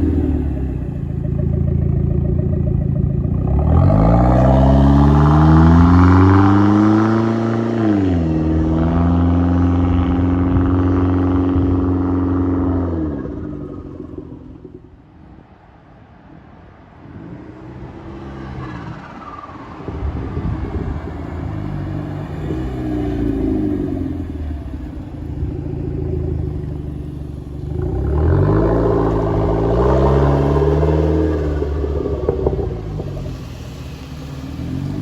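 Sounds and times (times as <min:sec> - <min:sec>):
car engine accelerating: 0:00.0 - 0:15.8, 0:16.4 - 0:35.0.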